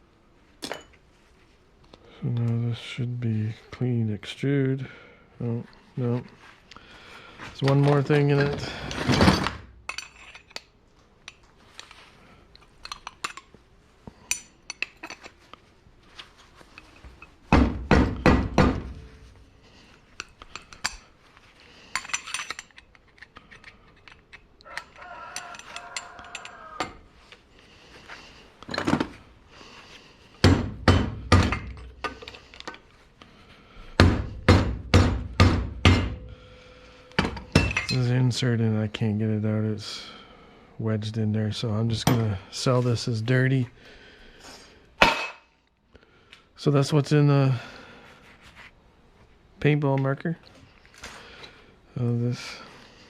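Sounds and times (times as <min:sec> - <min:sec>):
metallic clicks and clinks: 0:09.9 - 0:13.5, 0:21.9 - 0:26.6
hammer striking metal: 0:34.0 - 0:36.3.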